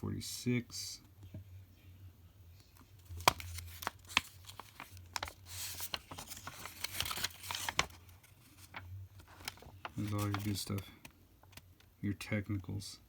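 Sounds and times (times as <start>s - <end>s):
paper pages turning: 2.6s - 11.9s
paper rustling: 2.8s - 11.8s.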